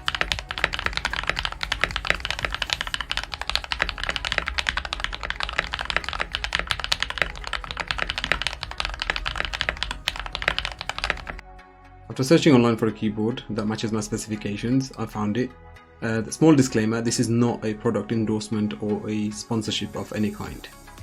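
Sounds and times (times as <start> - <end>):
fast mechanical keyboard typing: 0.0 - 11.4.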